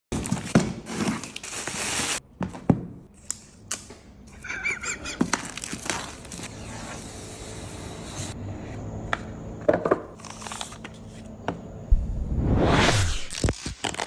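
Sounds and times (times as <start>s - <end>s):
plastic wrap crinkling and tearing: 0.2s - 2.2s, 5.1s - 6.5s, 13.3s - 14.0s
wavering squeak: 4.4s - 5.2s.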